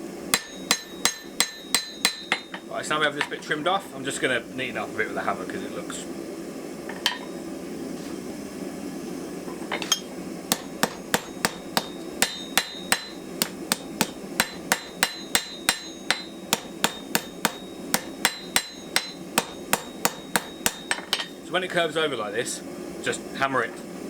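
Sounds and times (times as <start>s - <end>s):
hammer striking steel on anvil: 0.3s - 3.3s, 6.9s - 7.4s, 9.7s - 21.4s.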